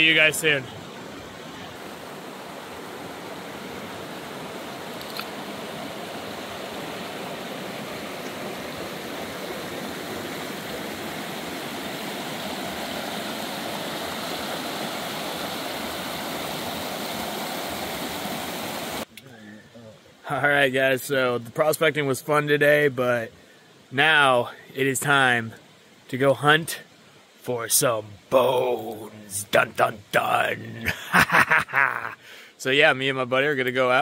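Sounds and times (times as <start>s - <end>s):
flowing water rushing: 0.0s - 19.1s.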